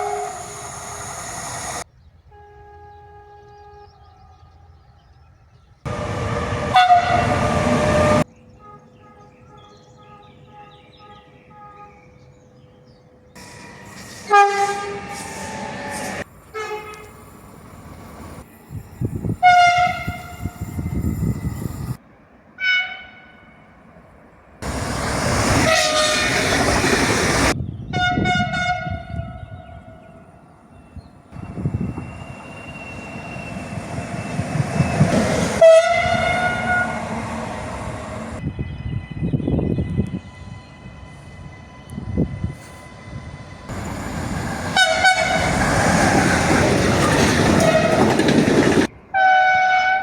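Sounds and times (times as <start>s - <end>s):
train horn blasts: 0.0s - 1.0s, 2.3s - 5.0s, 5.9s - 12.5s, 13.4s - 17.2s, 19.4s - 21.1s, 22.6s - 23.7s, 25.5s - 26.6s, 27.9s - 37.5s, 44.6s - 46.1s, 47.0s - 48.3s, 49.1s - 50.0s.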